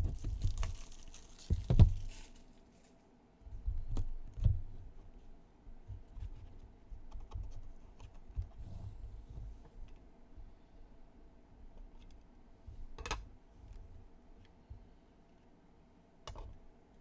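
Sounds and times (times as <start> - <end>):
soft packaging rustle: 0.0 - 3.1.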